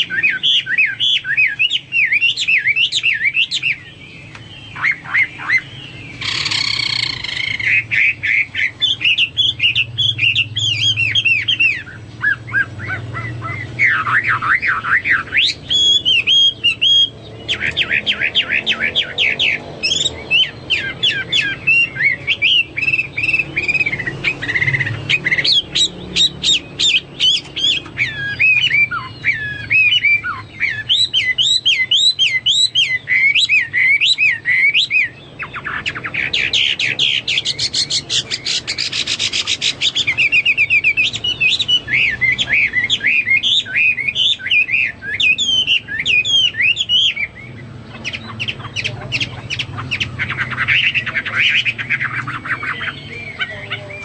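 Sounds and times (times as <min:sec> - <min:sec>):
bird singing varied song: 0:00.0 - 0:54.0.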